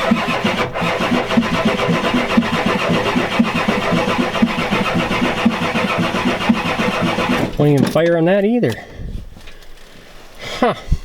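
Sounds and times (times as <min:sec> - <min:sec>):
diesel engine cranking on starter: 0:00.0 - 0:08.2.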